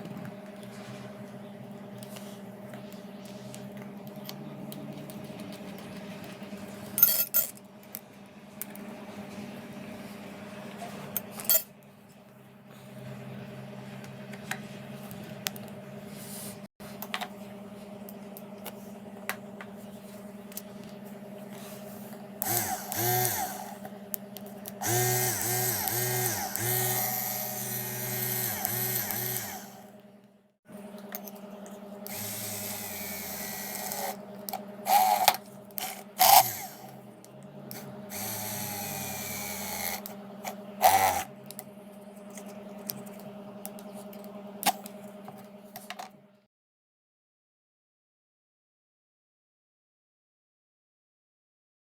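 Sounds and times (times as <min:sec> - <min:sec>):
electric drill motor whirring: 0:22.4 - 0:23.9, 0:24.8 - 0:30.0, 0:32.0 - 0:37.0, 0:37.7 - 0:41.3.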